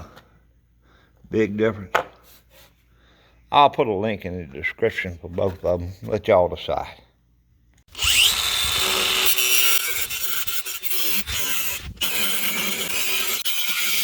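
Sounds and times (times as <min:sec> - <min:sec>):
angle grinder grinding: 0:07.9 - 0:14.0.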